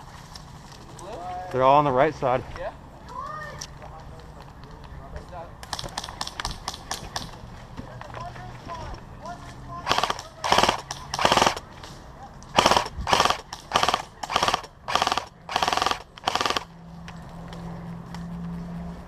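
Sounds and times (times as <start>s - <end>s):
airsoft rifle bursts: 9.9s - 11.7s, 12.6s - 16.7s.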